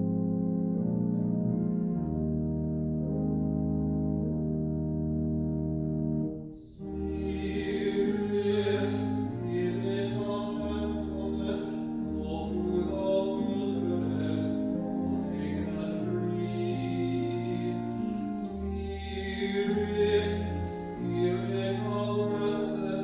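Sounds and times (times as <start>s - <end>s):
sustained keyboard chords: 0.0s - 23.0s
person singing: 6.6s - 23.0s.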